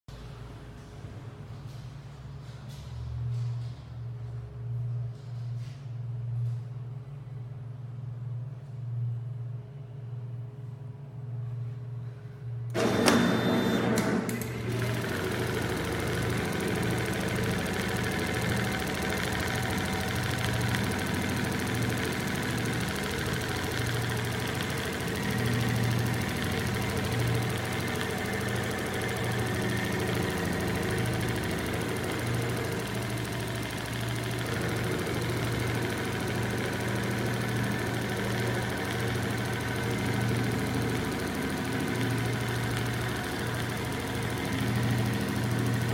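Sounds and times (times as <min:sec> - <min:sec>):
sewing machine clicks: 0:12.7 - 0:45.9
sewing machine humming: 0:12.7 - 0:45.9.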